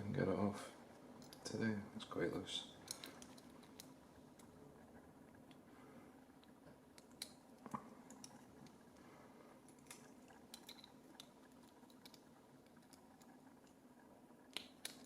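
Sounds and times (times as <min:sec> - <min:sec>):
small metal clicks: 0:01.2 - 0:01.5, 0:02.8 - 0:04.5, 0:09.7 - 0:13.8, 0:14.5 - 0:15.0.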